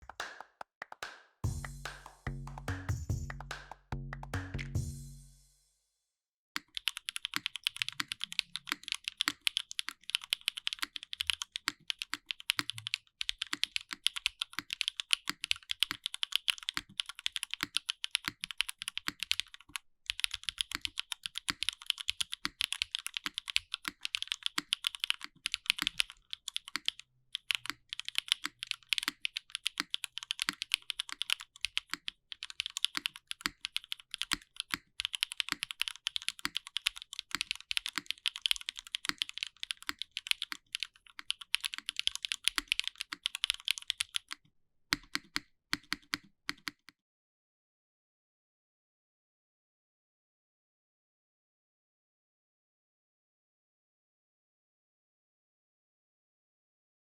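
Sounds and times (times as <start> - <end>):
fast mechanical keyboard typing: 6.6 - 44.4, 45.0 - 46.9.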